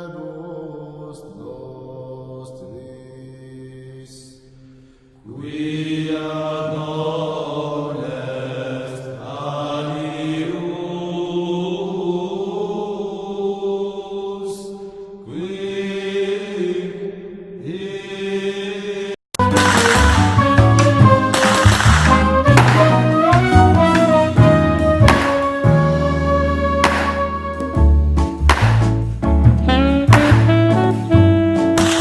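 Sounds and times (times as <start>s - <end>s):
chanted vocal drone: 0.0s - 4.5s, 5.2s - 19.2s
loud music: 19.4s - 32.0s.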